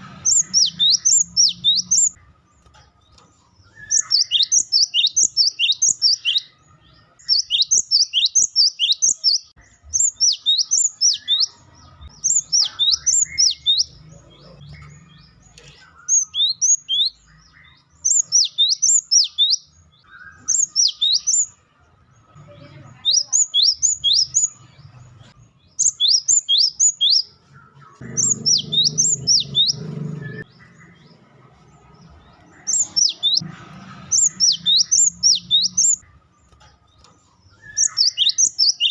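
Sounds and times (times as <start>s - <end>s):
bird calling in sharp bursts: 28.1s - 30.5s.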